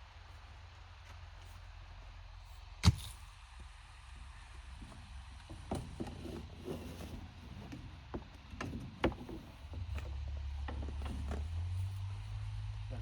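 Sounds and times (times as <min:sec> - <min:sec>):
low steady rumble: 0:00.0 - 0:13.0
fence panels knocking and clattering: 0:04.8 - 0:11.7.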